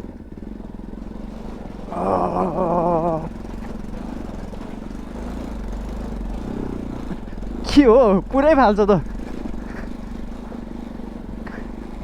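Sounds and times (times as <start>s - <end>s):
motorcycle engine running: 0.0s - 12.0s
person's wavering voice: 1.9s - 3.4s.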